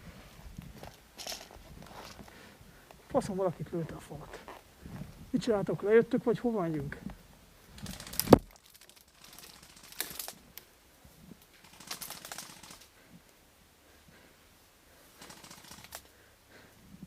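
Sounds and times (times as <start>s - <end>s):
airsoft gun bursts: 11.6s - 12.9s, 15.2s - 16.1s.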